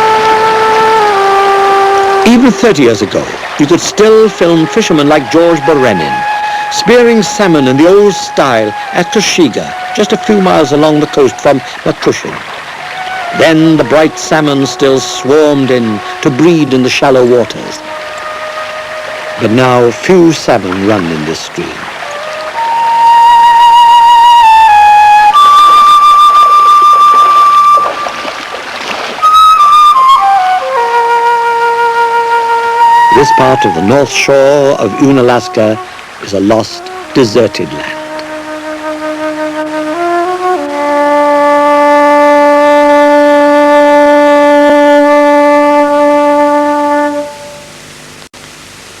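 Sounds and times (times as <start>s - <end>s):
slow melodic instrument line: 0.0s - 28.5s, 29.2s - 48.2s.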